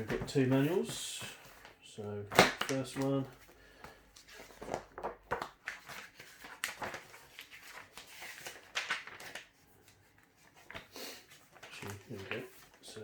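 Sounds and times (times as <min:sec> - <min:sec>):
paper rustling and page flicks: 0:04.2 - 0:13.0.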